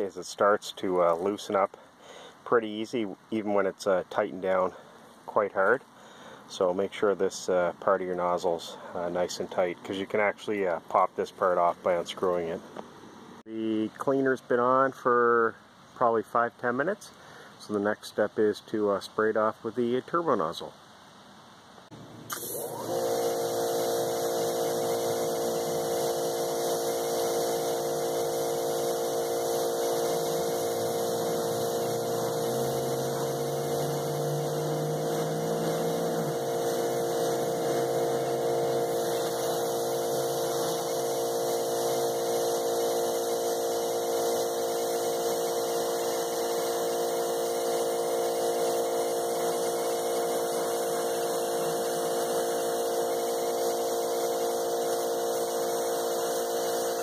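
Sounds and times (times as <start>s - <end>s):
pressure washer motor hum: 21.9s - 57.0s
water spraying hiss: 21.9s - 57.0s.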